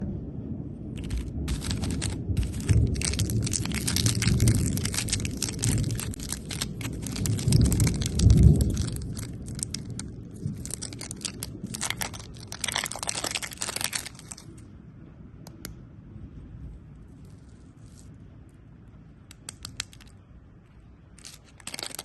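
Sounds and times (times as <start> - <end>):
biting thumps: 1.0 - 14.5
candy crunching: 1.0 - 14.6, 19.3 - 20.2, 21.1 - 22.0
sharp clicks: 19.3 - 20.2.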